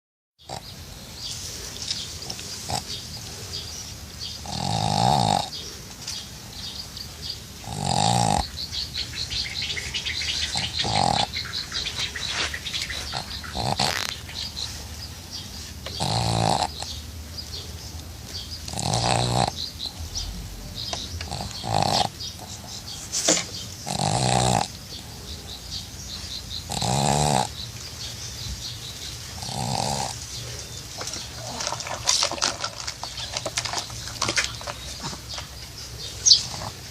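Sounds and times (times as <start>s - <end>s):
dog snoring: 2.6s - 3.0s, 4.3s - 5.7s, 7.6s - 8.6s, 10.4s - 12.1s, 12.9s - 14.6s, 15.8s - 17.0s, 18.6s - 23.1s, 23.8s - 25.0s, 26.6s - 27.6s, 29.4s - 30.6s.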